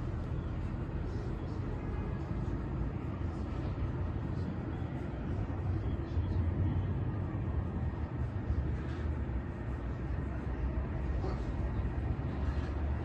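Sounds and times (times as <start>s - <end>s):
low rumble of traffic: 0.0s - 13.0s.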